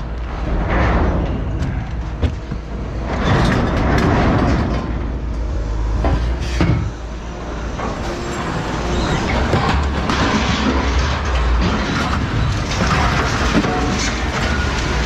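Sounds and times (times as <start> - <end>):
scrap metal clanking: 9.2 - 15.0.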